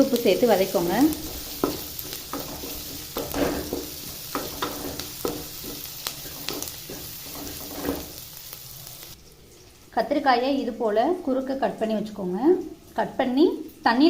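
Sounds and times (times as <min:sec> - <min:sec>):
stirring knocking and scraping pan: 0:00.0 - 0:09.2
onions sizzling in hot oil: 0:00.0 - 0:14.0.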